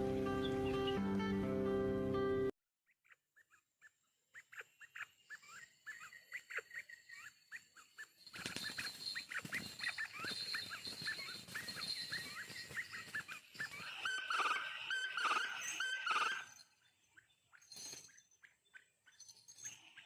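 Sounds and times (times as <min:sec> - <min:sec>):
quail clipped calls: 0:03.0 - 0:16.6.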